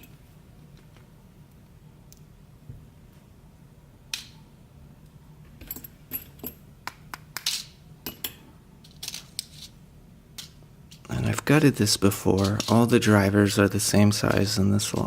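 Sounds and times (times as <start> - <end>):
small metal parts clicking: 12.3 - 12.9.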